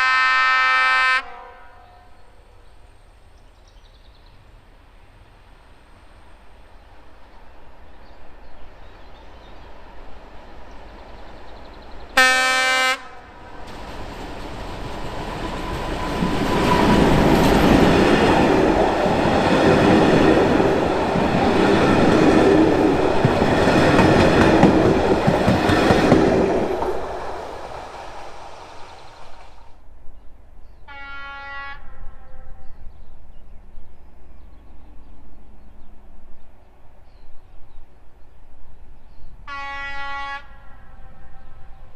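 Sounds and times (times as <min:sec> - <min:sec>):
locomotive horn: 0:00.0 - 0:02.6, 0:12.2 - 0:13.8, 0:30.9 - 0:32.7, 0:39.5 - 0:41.8
train engine and wheel noise: 0:00.0 - 0:41.9.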